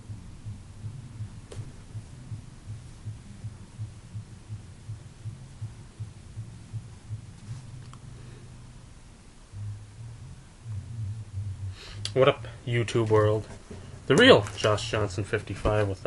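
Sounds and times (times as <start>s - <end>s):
low rhythmic throbbing hum: 0.0s - 16.0s.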